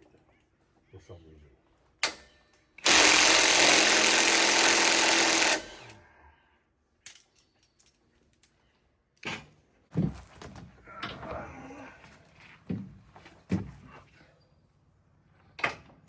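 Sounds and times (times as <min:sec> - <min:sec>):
impact wrench running: 0:02.8 - 0:06.0.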